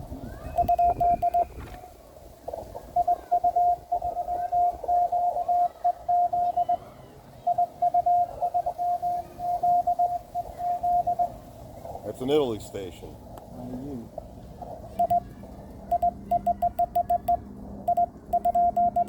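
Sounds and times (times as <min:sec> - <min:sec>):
morse code tone beeping: 0:00.5 - 0:01.6, 0:03.0 - 0:06.8, 0:07.4 - 0:11.4, 0:15.0 - 0:15.2, 0:15.9 - 0:19.0.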